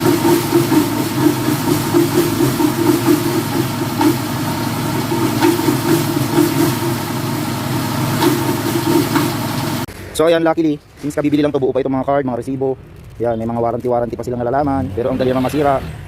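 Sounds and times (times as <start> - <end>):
air compressor running: 0.0 - 9.9
chugging knock inside compressor: 0.0 - 9.9.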